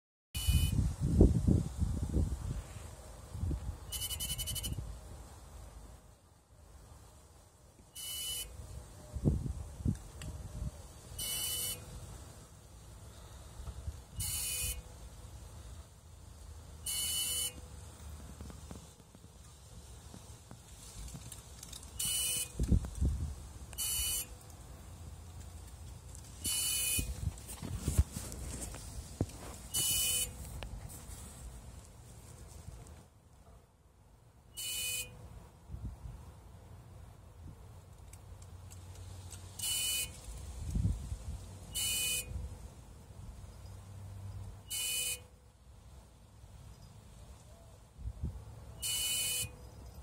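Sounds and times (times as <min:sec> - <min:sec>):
short buzzing bursts: 0:00.4 - 0:00.9, 0:03.8 - 0:04.9, 0:07.9 - 0:08.7, 0:11.1 - 0:12.1, 0:14.1 - 0:15.1, 0:16.8 - 0:17.7, 0:21.9 - 0:22.8, 0:23.7 - 0:24.4, 0:26.4 - 0:27.3, 0:29.7 - 0:30.5, 0:39.6 - 0:40.2, 0:41.7 - 0:42.4, 0:44.7 - 0:45.3, 0:48.8 - 0:49.7
short electrical buzzes: 0:03.9 - 0:04.9, 0:11.1 - 0:12.2, 0:14.1 - 0:14.9, 0:21.7 - 0:23.2, 0:23.8 - 0:24.5, 0:26.4 - 0:30.6.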